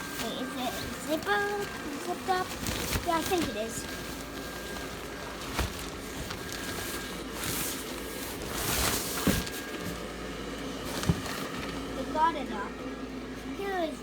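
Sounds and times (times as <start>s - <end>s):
rustling: 0.0s - 10.1s
blower fan whirring: 0.0s - 14.0s.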